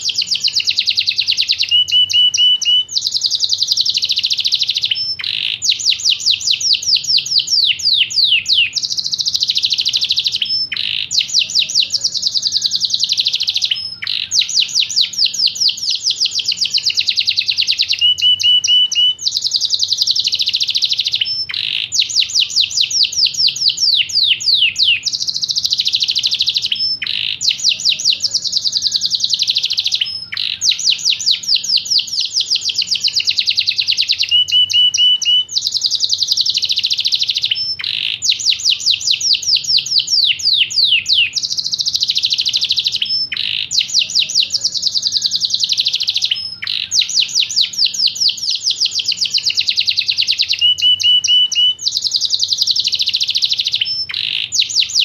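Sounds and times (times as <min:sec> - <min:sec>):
canary singing trills: 0:00.0 - 0:55.0.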